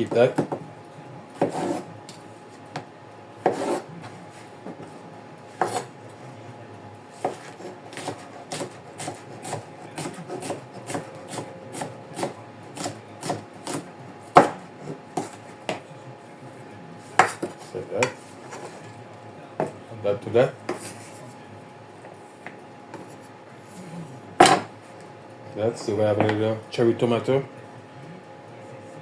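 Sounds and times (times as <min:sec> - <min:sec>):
knife cutting on cutting board: 0:01.4 - 0:01.9, 0:03.4 - 0:03.9, 0:05.6 - 0:05.9, 0:07.2 - 0:15.4.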